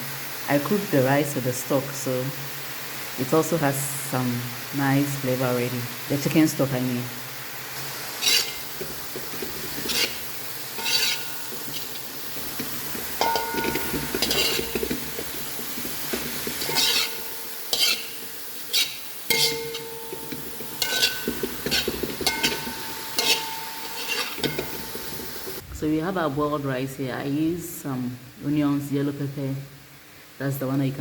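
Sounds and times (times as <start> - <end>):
food sizzling in a frying pan: 0.0 - 25.6
utensil scraping and knocking pan: 7.8 - 25.6.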